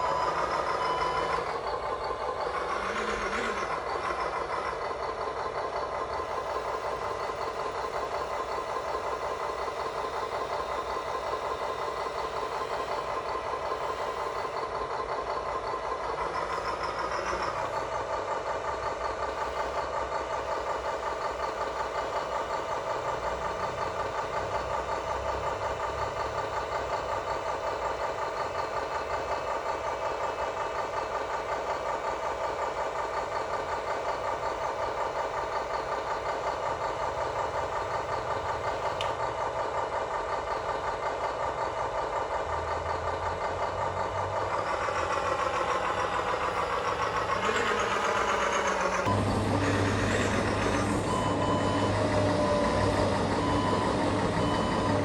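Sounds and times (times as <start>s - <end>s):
radio-controlled machine humming: 44.7s - 55.0s.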